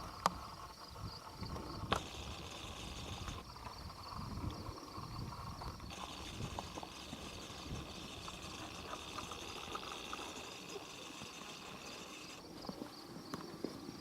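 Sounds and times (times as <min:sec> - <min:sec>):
high insect buzz: 0:00.0 - 0:14.0
hooves walking on dirt: 0:05.6 - 0:14.0.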